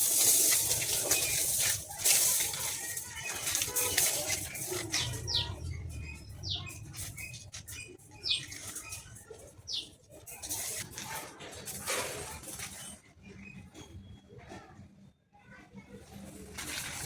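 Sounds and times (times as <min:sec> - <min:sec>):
birds chirping: 0:00.0 - 0:11.0
rustling and clicks: 0:00.0 - 0:13.0, 0:16.2 - 0:17.0.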